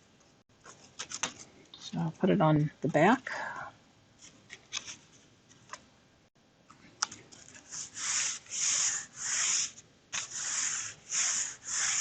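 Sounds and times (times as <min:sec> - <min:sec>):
hand rubbing on paper: 0:07.7 - 0:12.0.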